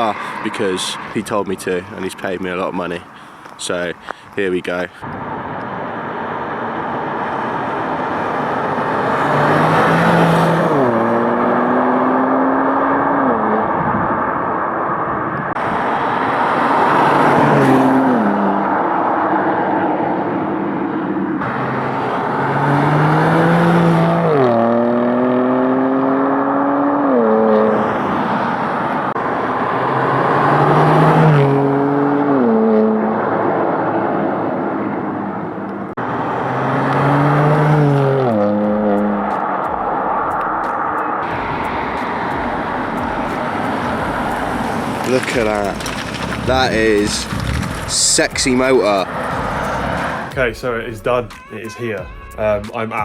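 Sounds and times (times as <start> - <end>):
car engine accelerating hard: 6.3 - 50.4
loud exhaust roar: 41.2 - 50.4.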